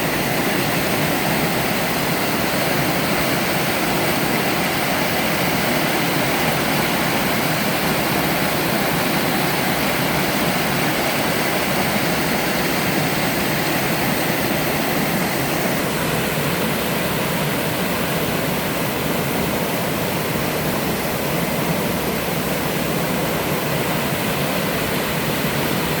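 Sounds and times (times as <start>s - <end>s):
waterfall splashing: 0.0s - 26.0s.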